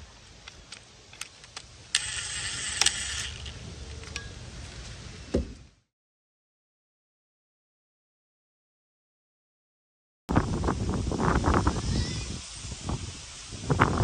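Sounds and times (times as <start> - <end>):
thump: 5.3 - 5.6.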